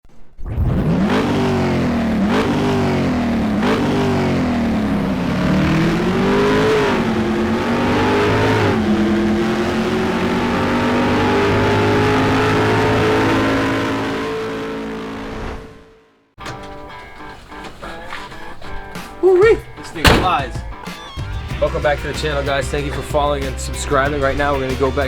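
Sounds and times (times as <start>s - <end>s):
car engine revving and accelerating: 0.5s - 16.2s.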